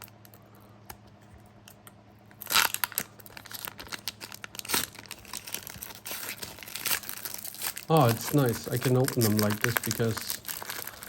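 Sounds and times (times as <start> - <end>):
wrapper crinkling: 2.3 - 11.0
wrapper tearing open: 2.3 - 11.0.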